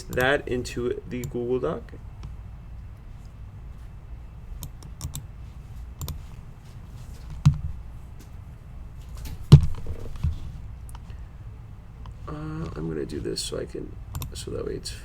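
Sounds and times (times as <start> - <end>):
computer keys clicking: 0.0 - 0.4, 4.6 - 5.3, 6.0 - 6.3, 14.1 - 14.4
loud knocks: 9.5 - 10.4.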